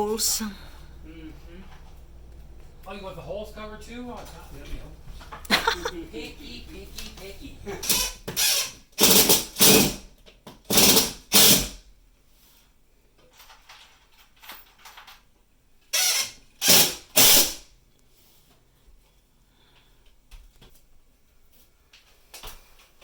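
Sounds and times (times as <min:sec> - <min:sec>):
power tool bursts: 0:07.8 - 0:10.1, 0:10.7 - 0:11.8, 0:16.0 - 0:17.6.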